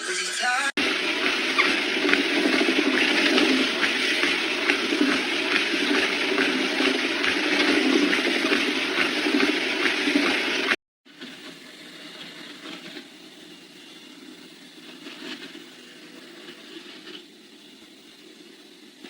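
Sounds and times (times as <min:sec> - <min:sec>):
loud rushing noise: 0:00.8 - 0:10.8.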